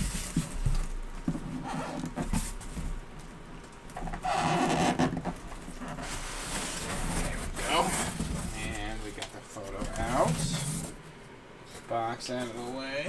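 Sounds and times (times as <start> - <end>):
cardboard box knocks and scrapes: 0.0 - 3.0
photo scraping out of box: 5.9 - 9.1.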